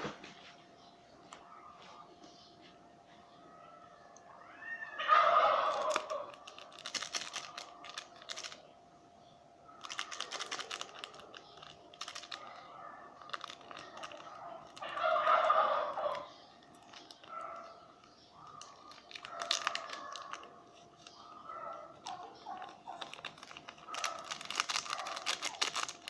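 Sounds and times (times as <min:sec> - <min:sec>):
faint steady hum: 0:00.0 - 0:26.0
crisp food crunching and chewing: 0:05.2 - 0:08.6, 0:09.8 - 0:26.0.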